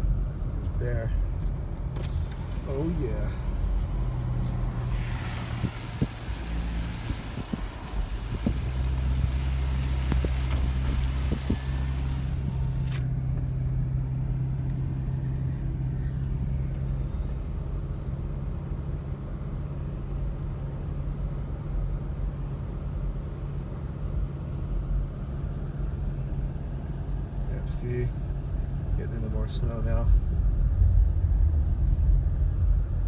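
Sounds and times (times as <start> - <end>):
car engine and road noise: 0.0 - 33.0
hiss of air: 2.3 - 13.0.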